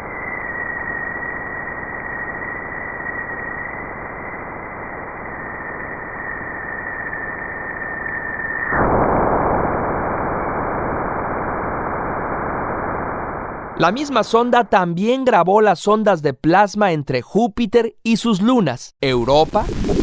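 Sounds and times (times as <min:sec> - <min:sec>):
high wavering whistle: 0:00.0 - 0:08.7.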